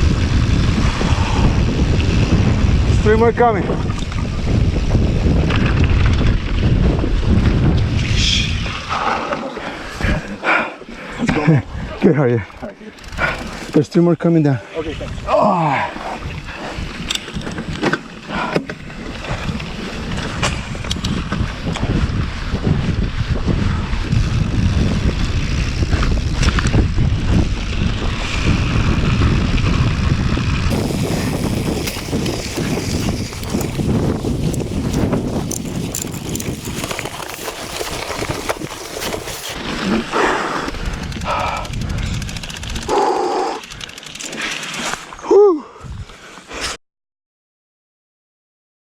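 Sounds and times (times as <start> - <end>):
wind rushing over microphone: 0.0 - 10.4, 11.2 - 43.9, 45.8 - 46.2
bike rattling over bumps: 12.8 - 13.9, 16.8 - 39.8, 40.6 - 42.9
tyre noise on dirt: 30.7 - 40.1.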